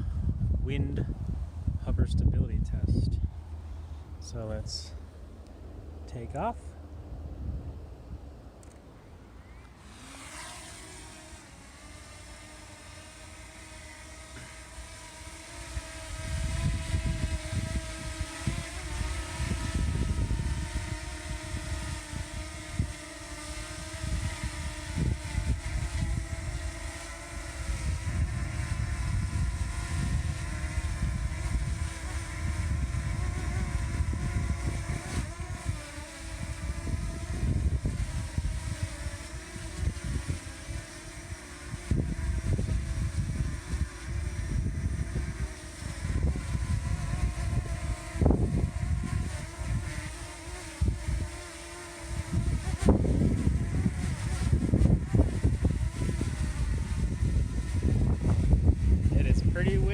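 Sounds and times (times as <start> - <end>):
wind buffeting microphone: 0.0 - 5.1, 5.9 - 8.5, 15.4 - 51.4, 52.0 - 59.9
drone propeller whine: 3.2 - 59.9.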